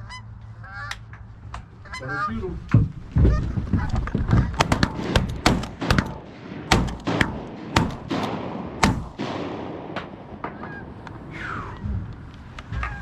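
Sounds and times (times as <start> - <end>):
shotgun shots echoing: 4.6 - 10.7.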